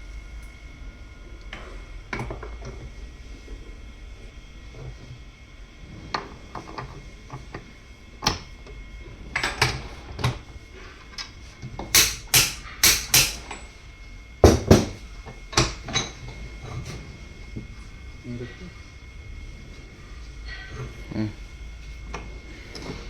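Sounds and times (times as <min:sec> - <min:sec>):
faint high hum: 0:10.3 - 0:23.0
tools and metal parts knocking: 0:11.9 - 0:13.6, 0:14.4 - 0:15.0.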